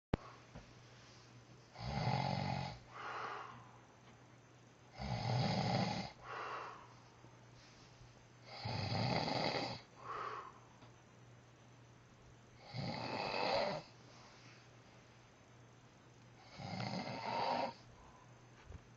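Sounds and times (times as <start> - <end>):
man snoring heavily: 1.7 - 3.6, 4.9 - 6.9, 8.4 - 10.6, 12.6 - 13.9, 16.4 - 17.8.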